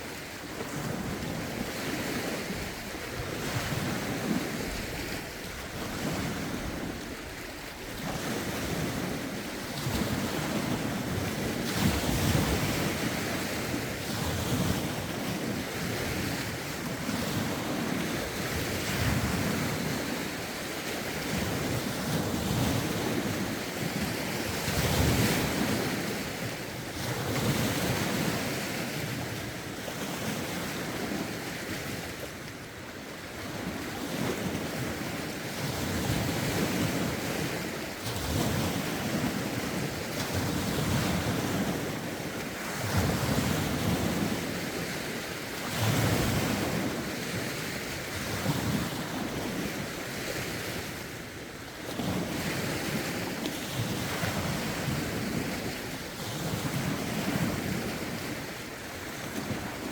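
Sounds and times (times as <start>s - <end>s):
waves lapping against shore: 0.0s - 59.9s
wind buffeting microphone: 0.2s - 32.4s.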